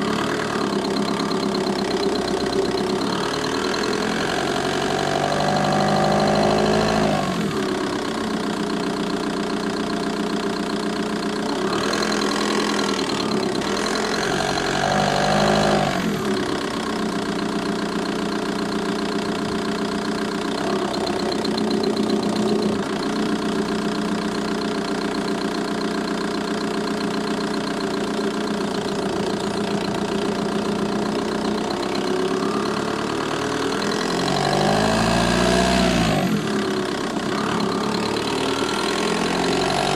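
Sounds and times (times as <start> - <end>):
engine bay ticking: 0.0 - 4.2, 7.5 - 14.6, 16.2 - 34.9
diesel engine idling: 0.0 - 39.9.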